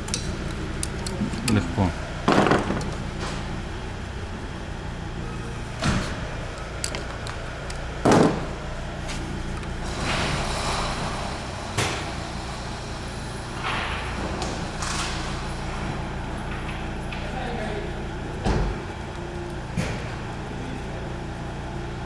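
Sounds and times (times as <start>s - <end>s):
scraping and handling noise: 5.7s - 9.8s.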